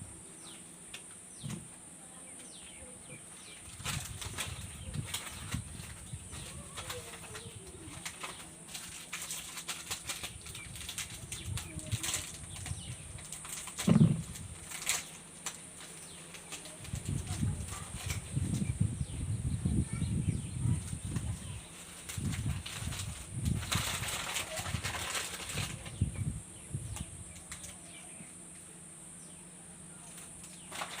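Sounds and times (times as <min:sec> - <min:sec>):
candy wrapper crinkling: 0:03.8 - 0:18.2, 0:21.7 - 0:25.9, 0:30.2 - 0:31.0.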